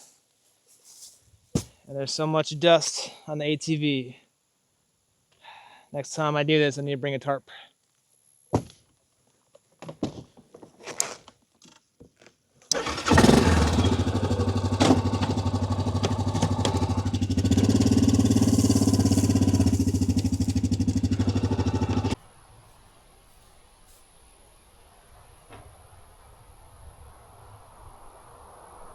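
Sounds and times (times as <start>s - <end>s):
small petrol engine running: 12.7s - 22.2s.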